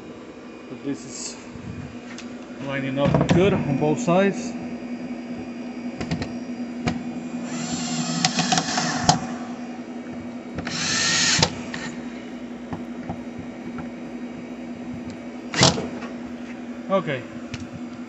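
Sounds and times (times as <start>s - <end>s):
cordless drill driving bolts: 7.5s - 9.3s, 10.6s - 12.0s.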